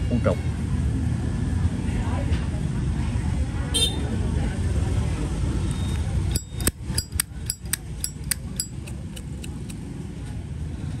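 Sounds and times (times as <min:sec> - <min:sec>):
low traffic rumble: 0:00.0 - 0:11.0
lighter lid metallic clicks: 0:06.4 - 0:09.8.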